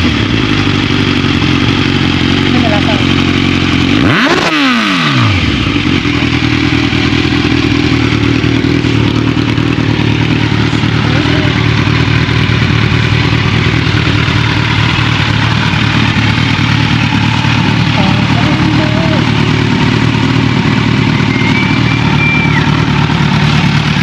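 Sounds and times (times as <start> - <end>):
motorcycle engine running: 0.0 - 24.0.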